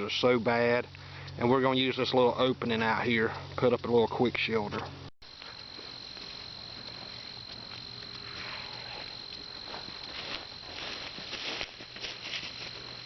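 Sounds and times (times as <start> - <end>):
insects shrilling: 5.2 - 13.0
soft rustling: 5.3 - 13.0.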